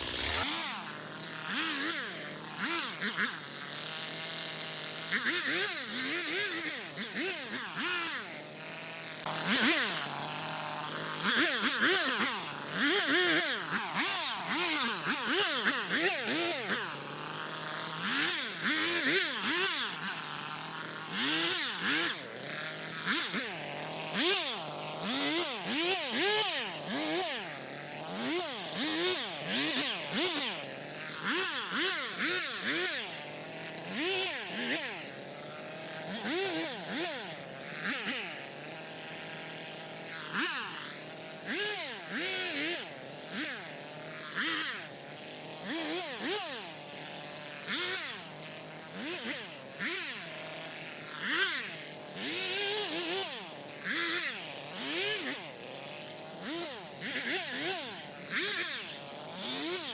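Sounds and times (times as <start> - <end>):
chainsaw revving: 0.0 - 59.9.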